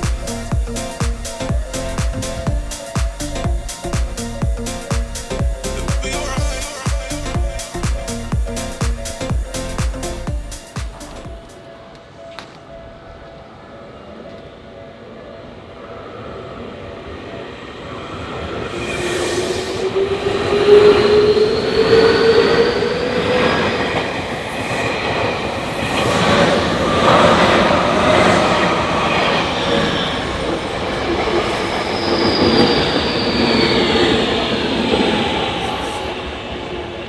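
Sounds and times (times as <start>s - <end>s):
rising whine: 0.0s - 11.6s
electric train passing: 0.0s - 37.0s
high wheel squeal: 25.8s - 36.3s.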